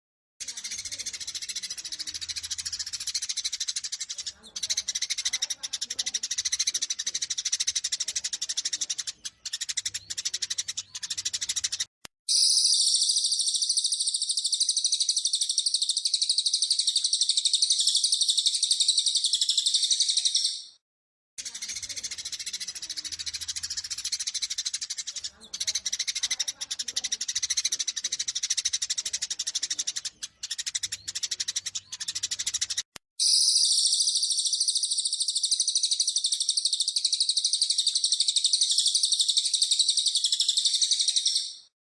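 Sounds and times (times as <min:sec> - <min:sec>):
sparrows chattering fighting calls: 0:00.4 - 0:20.8, 0:21.4 - 0:41.7
high-pitched twittering: 0:06.2 - 0:20.8, 0:27.2 - 0:41.7.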